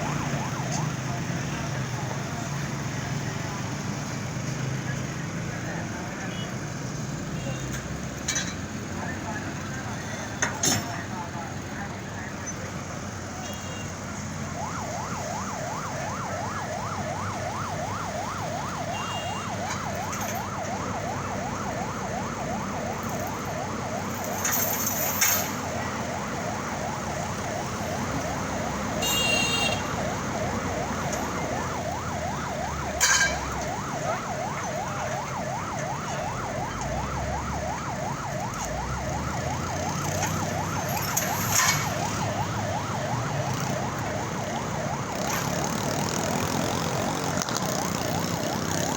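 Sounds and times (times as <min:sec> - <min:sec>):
engines and traffic rumble: 0:00.0 - 0:48.9
electronic siren warbling: 0:25.5 - 0:48.9.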